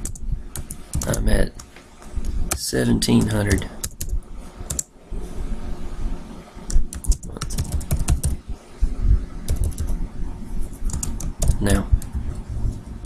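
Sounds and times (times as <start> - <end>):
computer keyboard typing: 0.0 - 1.2, 2.5 - 4.9, 6.7 - 8.4, 9.5 - 9.9, 10.8 - 12.2.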